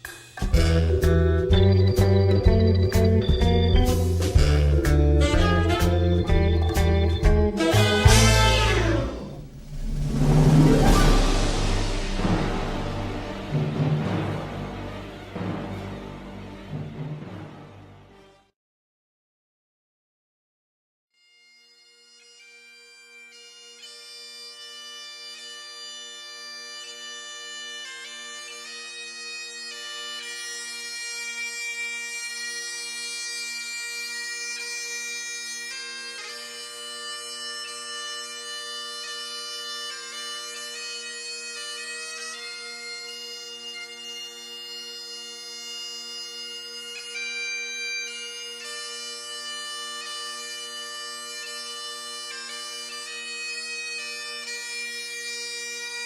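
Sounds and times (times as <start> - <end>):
bagpipe melody over drones: 0.6 - 18.3, 21.2 - 56.0.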